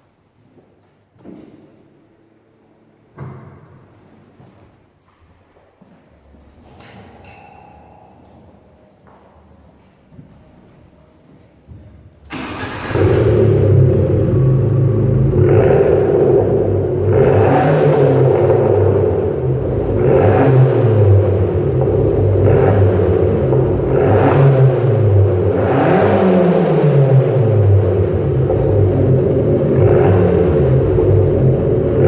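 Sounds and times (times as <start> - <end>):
car engine starting: 12.2 - 32.0
car engine idling: 12.3 - 25.8, 26.8 - 32.0
engine revving in blips: 12.4 - 32.0.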